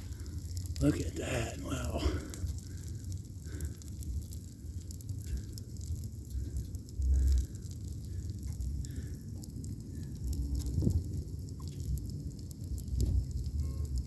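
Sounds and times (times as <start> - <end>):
engine sizzling and crackling: 0.0 - 14.0
scattered ticks: 0.0 - 14.0
wind rumble on microphone: 6.3 - 14.0.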